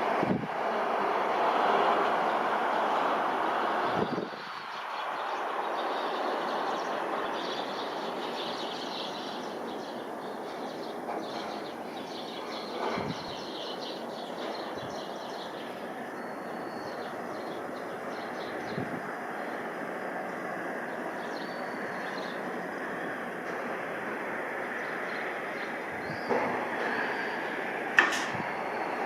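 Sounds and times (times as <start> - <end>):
distant jet engines rushing: 0.0 - 29.0.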